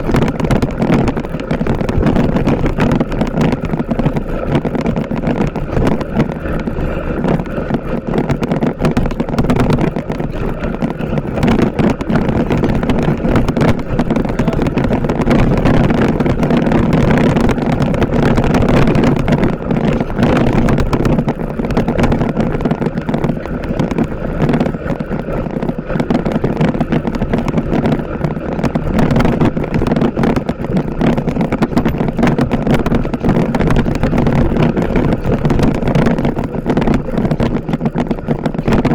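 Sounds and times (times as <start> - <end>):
motorcycle engine running: 0.0 - 38.9.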